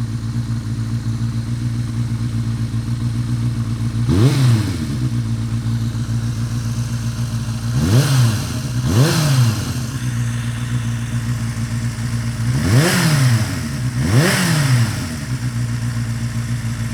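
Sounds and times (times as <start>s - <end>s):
motorcycle engine idling and revving: 0.0s - 16.9s.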